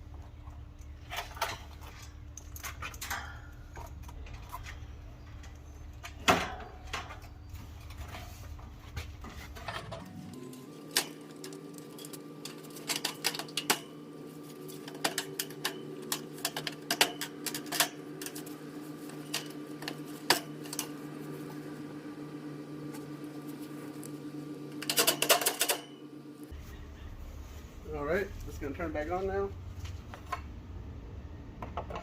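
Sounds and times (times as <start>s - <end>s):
steady low hum: 0.0s - 31.6s
metal panels clicking and tapping: 10.8s - 21.0s, 24.8s - 25.9s.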